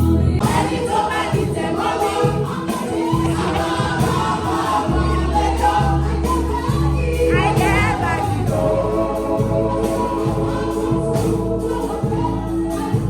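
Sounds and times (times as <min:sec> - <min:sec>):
bass line and beat: 0:00.0 - 0:13.0
choir singing gospel music: 0:00.0 - 0:13.0.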